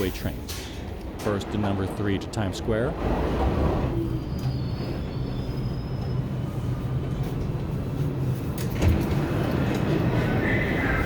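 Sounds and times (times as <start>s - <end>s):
subway train hum and rumble: 0.0s - 11.0s
high wheel squeal: 4.0s - 6.7s.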